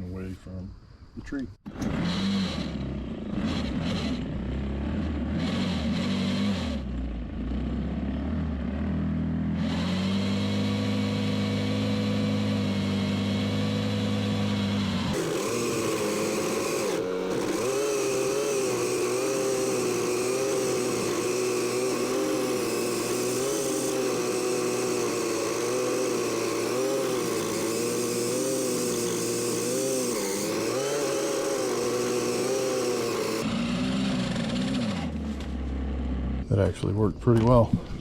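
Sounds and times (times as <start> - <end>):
pole saw cutting branch: 9.6 - 35.3.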